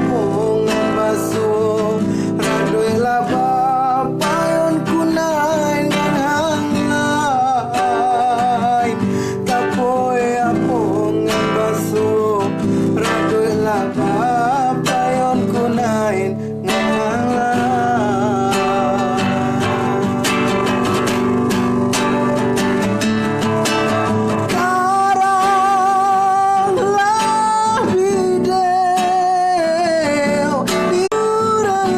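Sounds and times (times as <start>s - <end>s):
acoustic guitar strumming: 0.0s - 31.9s
person singing ornamented melody: 22.0s - 31.9s.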